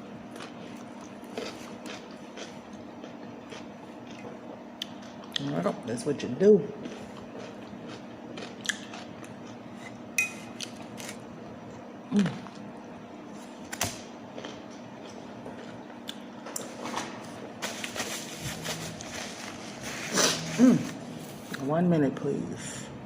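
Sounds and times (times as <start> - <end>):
faint steady hum: 0.0 - 23.0
chewing and smacking: 0.3 - 5.6, 6.8 - 9.6, 14.3 - 16.7
person murmuring: 20.2 - 21.0.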